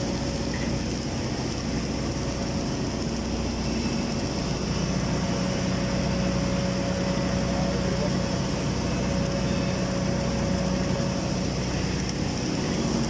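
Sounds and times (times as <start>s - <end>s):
welding machinery hum: 0.0s - 13.0s.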